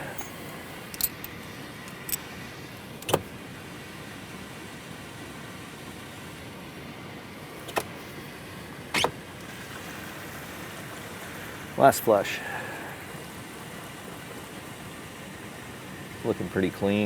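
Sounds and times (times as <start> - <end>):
tools clicking: 0.0 - 2.2
water hissing through pipe: 10.8 - 13.6.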